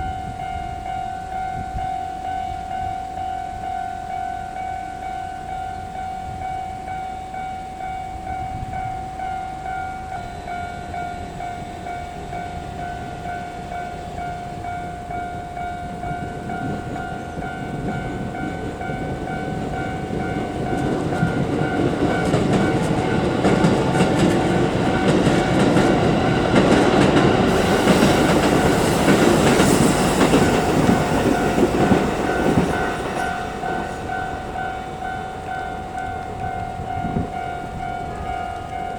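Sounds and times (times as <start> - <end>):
level-crossing warning bell: 0.0 - 38.9
train wheels clacking over rail joints: 19.1 - 34.7.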